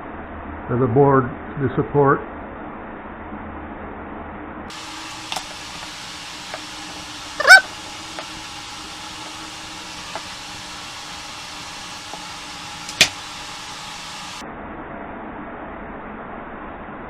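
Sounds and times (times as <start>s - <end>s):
steady hiss and hum: 4.7s - 14.4s.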